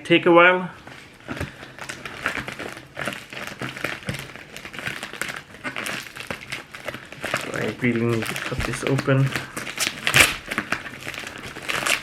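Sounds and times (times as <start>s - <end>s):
package wrapping crinkling: 0.8s - 12.0s.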